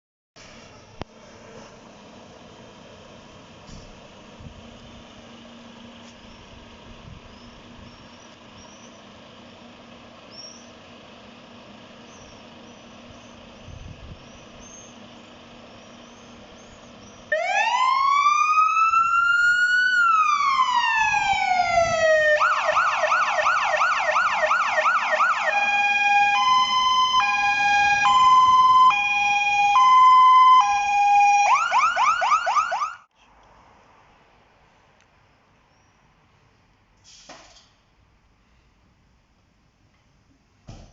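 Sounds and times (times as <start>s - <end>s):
fire engine siren wailing and yelping: 17.3s - 33.1s.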